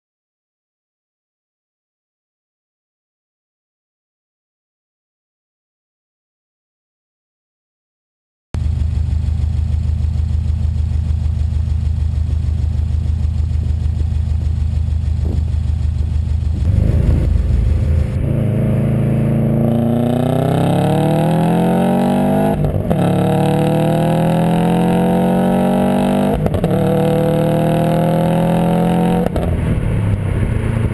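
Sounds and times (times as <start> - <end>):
car engine idling: 8.6 - 19.8
car engine accelerating hard: 15.1 - 30.9.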